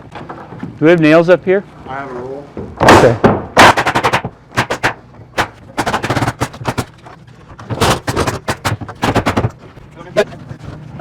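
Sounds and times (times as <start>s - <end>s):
nail gun shots: 2.8s - 6.9s, 7.8s - 9.5s.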